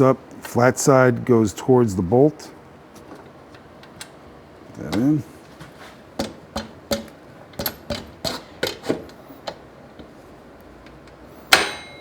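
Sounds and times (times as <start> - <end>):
light metal clicks and knocks: 6.2 - 10.2.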